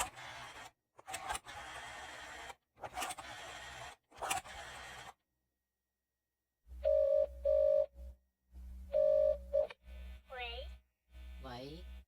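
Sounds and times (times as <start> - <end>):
telephone ringing tone: 6.8 - 8.0, 9.0 - 9.8.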